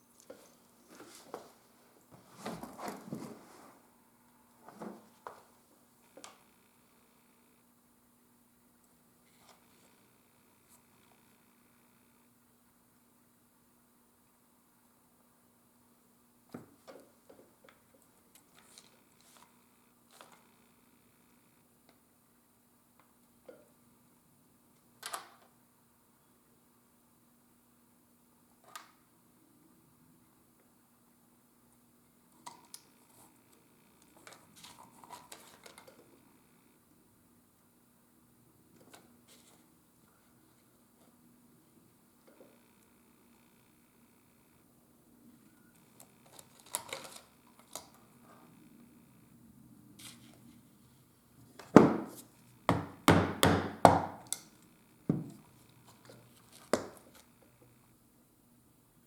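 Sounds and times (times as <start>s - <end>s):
hammer striking leather: 51.8s - 54.3s.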